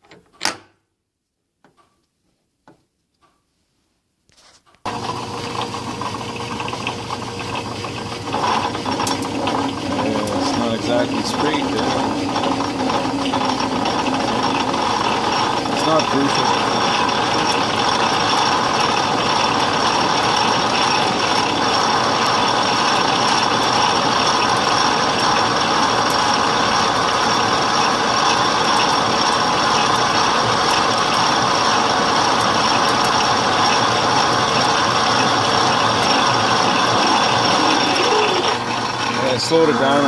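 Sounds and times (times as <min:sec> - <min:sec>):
metal lathe running: 0:04.9 - 0:40.0
drill bit cutting into steel: 0:08.2 - 0:40.0.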